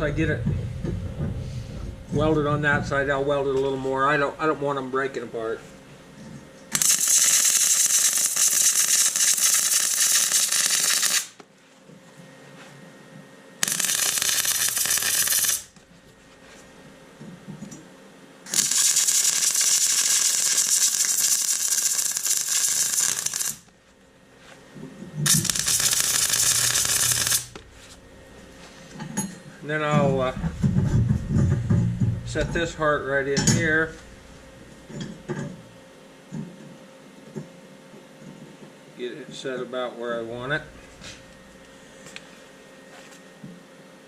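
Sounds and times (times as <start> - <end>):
welder arc crackling: 6.7 - 11.4, 13.6 - 15.8, 18.5 - 23.8, 25.2 - 28.5.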